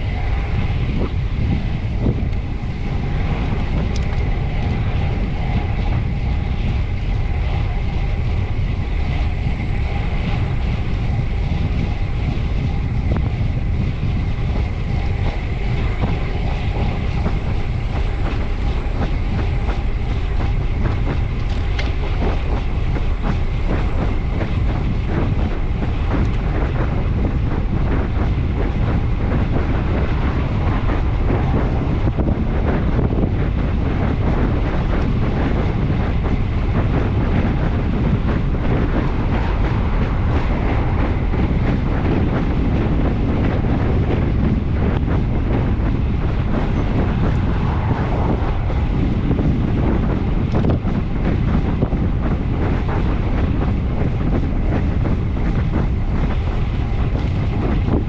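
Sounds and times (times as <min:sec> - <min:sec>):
bicycle road and drivetrain noise: 0:00.0 - 0:58.0
wind buffeting microphone: 0:00.0 - 0:58.0
small clicks and rattles: 0:21.4 - 0:22.0.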